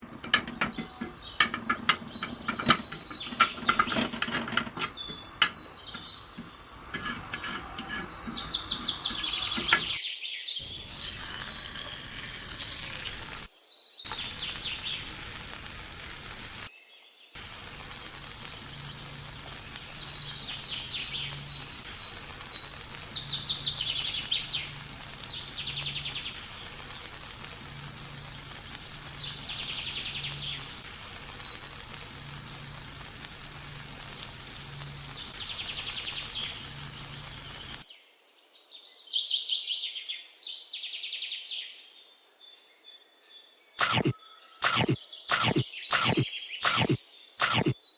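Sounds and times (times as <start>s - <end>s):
chicken frying sizzle: 0.0s - 10.0s, 10.6s - 16.7s, 17.4s - 37.9s
kitchen clicks and knocks: 0.0s - 10.0s.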